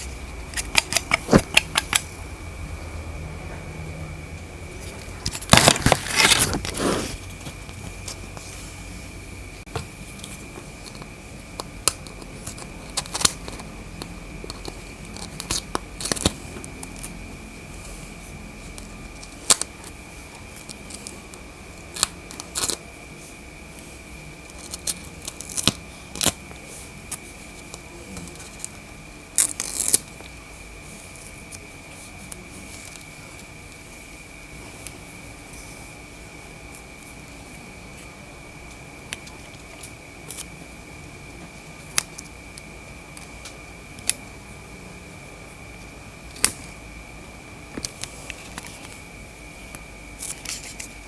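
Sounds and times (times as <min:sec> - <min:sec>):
cutting or tearing sounds: 0:05.5 - 0:07.2.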